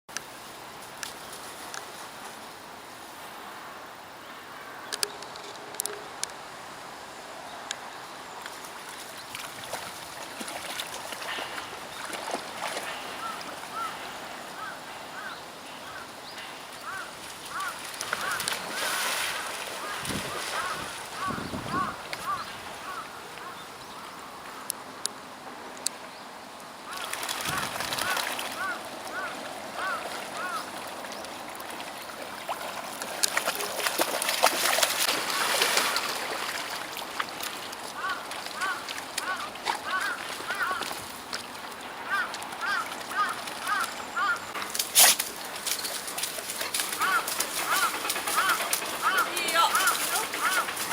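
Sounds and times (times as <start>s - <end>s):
puppies splashing through water: 8.5s - 16.0s, 16.7s - 23.6s, 26.9s - 50.9s.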